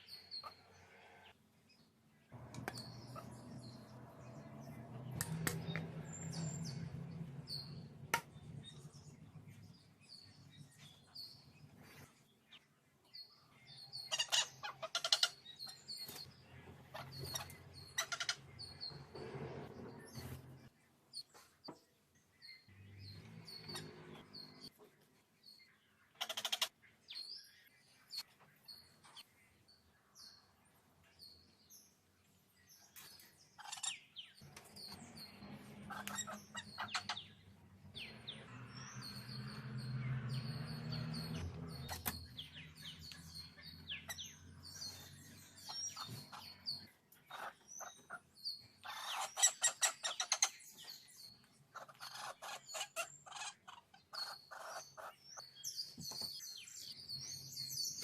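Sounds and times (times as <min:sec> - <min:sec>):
birds chirping: 0:00.0 - 0:58.0
harsh bird chattering: 0:14.0 - 0:15.8, 0:16.9 - 0:18.8, 0:26.2 - 0:26.7, 0:35.8 - 0:37.4, 0:51.7 - 0:55.2.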